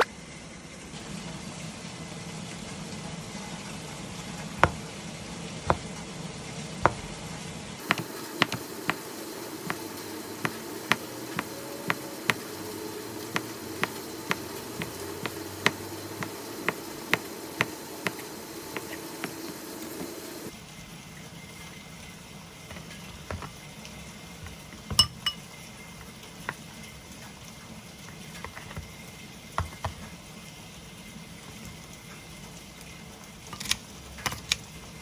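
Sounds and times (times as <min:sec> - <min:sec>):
sharp knocks: 0:05.7 - 0:06.0.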